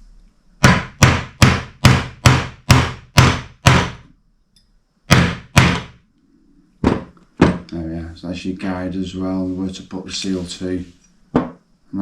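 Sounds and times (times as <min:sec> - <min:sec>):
hammer striking metal tool: 0:00.6 - 0:04.0, 0:05.1 - 0:05.9.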